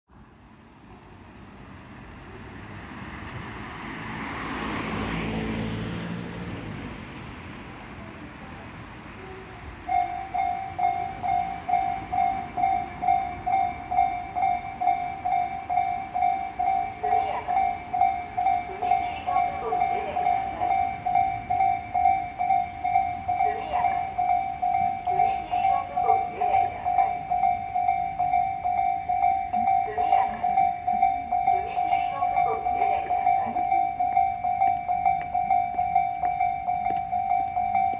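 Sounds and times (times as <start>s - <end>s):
vehicle passing by: 2.4s - 8.0s
level-crossing warning bell ringing: 9.8s - 37.9s.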